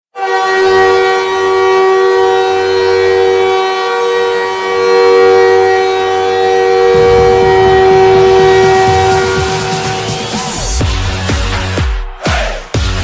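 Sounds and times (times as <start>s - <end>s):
goal horn blast: 6.5s - 11.4s.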